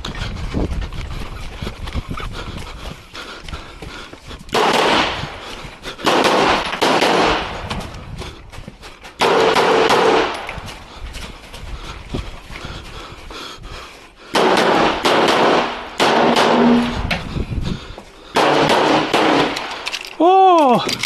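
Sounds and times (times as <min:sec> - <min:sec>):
sharp rifle cracks: 0:06.0 - 0:07.6, 0:18.4 - 0:21.0
rifle shot strings: 0:18.4 - 0:20.2.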